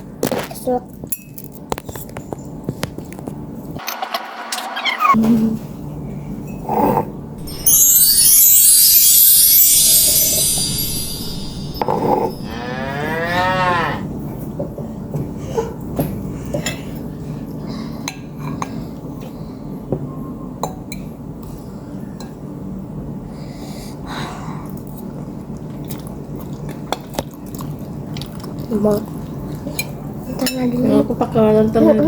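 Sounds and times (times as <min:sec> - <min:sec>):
cow mooing: 0:12.4 - 0:14.1.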